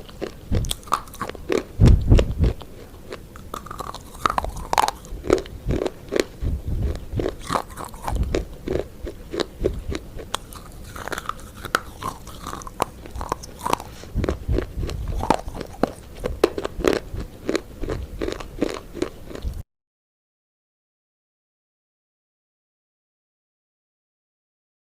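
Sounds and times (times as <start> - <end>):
crunchy chewing and biting: 0.0 - 19.6.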